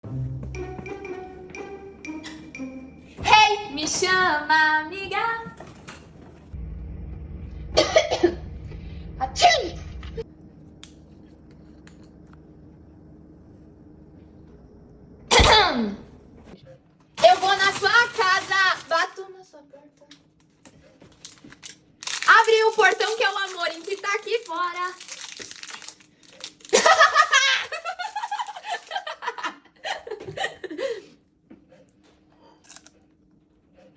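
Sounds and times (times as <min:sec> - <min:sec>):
girl coughing: 0:07.8 - 0:08.5, 0:09.3 - 0:10.0, 0:15.3 - 0:16.1
girl sneezing: 0:09.3 - 0:10.0, 0:15.3 - 0:16.0
girl laughing and squealing: 0:26.8 - 0:30.6.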